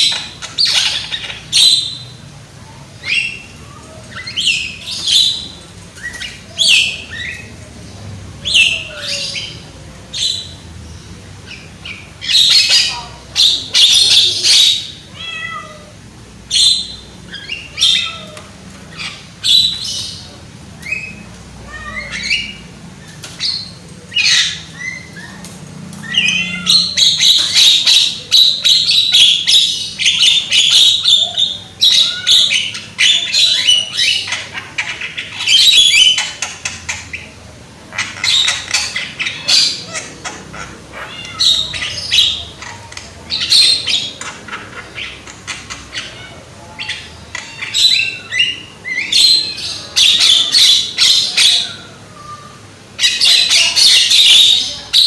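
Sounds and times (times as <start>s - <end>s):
bird squawking and chattering: 0.0s - 2.2s, 11.4s - 15.8s, 16.5s - 55.0s.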